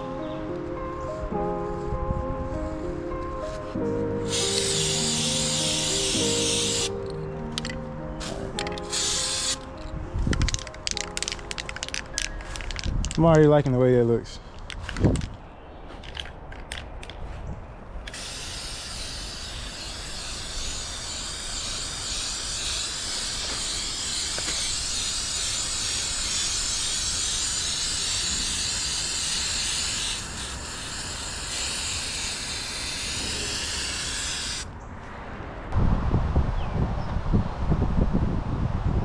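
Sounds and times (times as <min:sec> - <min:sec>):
spray nozzle hissing: 0:04.3 - 0:07.0, 0:08.2 - 0:09.7, 0:18.1 - 0:34.7.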